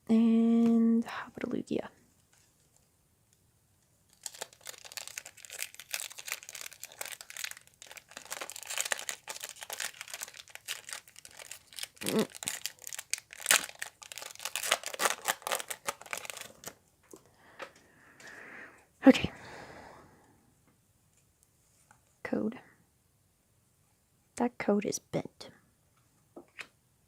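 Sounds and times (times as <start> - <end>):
foil wrapper crinkling and tearing: 4.1 - 16.8.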